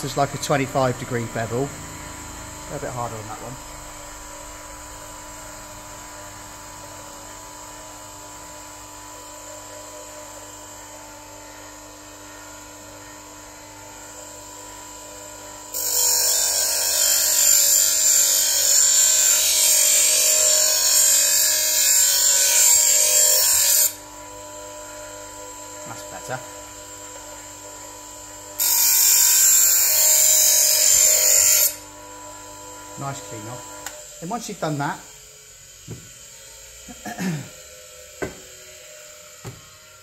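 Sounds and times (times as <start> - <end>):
bench grinder whine: 0.0 - 40.0
steel blade grinding on stone: 15.7 - 24.0, 28.6 - 31.8.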